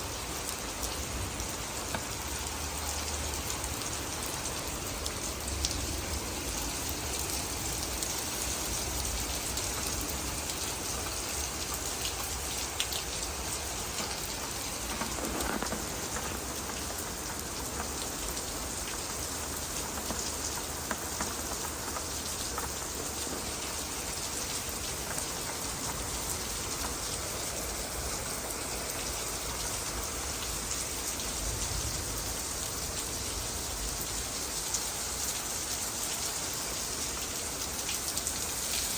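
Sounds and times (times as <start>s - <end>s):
rain pattering: 0.0s - 38.9s.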